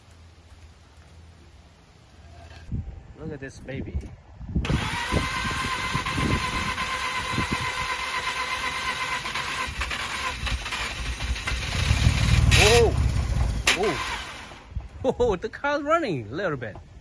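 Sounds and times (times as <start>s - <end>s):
engine cranking on starter: 4.6s - 14.7s.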